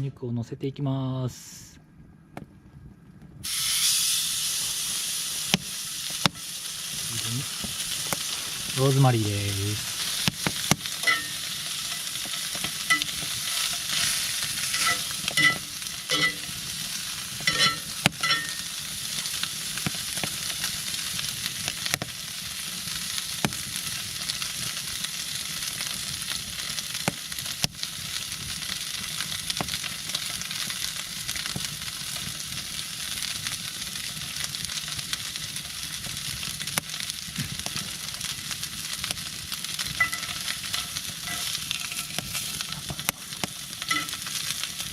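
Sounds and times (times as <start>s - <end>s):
steak sizzling: 3.4s - 44.9s
sharp clicks and pops: 5.5s - 6.4s, 10.1s - 11.3s, 27.0s - 27.8s, 39.0s - 44.9s.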